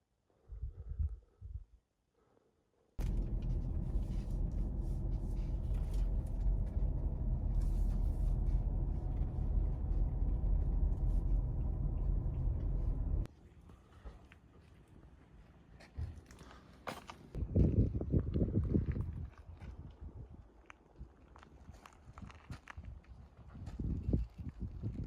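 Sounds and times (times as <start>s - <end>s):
road vehicle rumbling: 3.0s - 13.3s.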